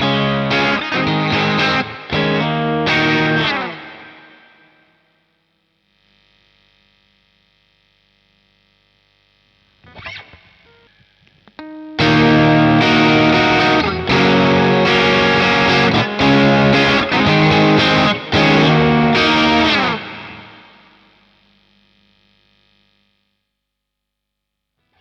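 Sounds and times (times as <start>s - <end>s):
overdriven electric guitar chords: 0.0s - 6.2s, 9.8s - 22.0s.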